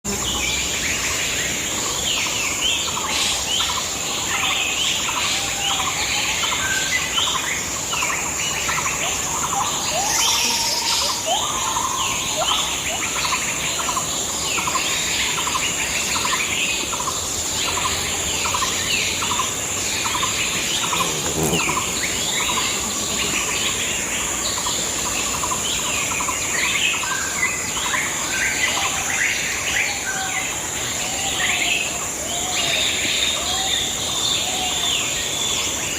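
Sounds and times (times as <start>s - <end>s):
steady high-pitched hiss: 0.1s - 35.9s
birds chirping: 16.7s - 27.0s.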